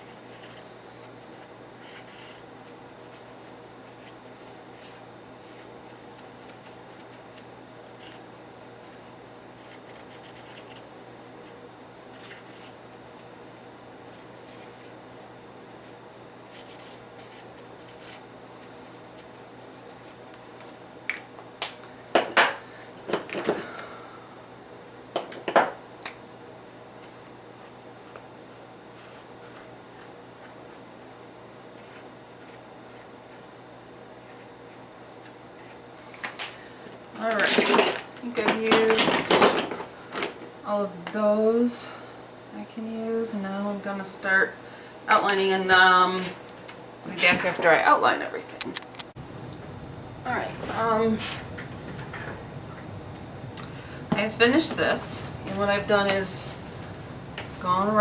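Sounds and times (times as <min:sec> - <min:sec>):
hands rubbing and scratching paper: 0:00.0 - 0:07.4, 0:12.2 - 0:20.8.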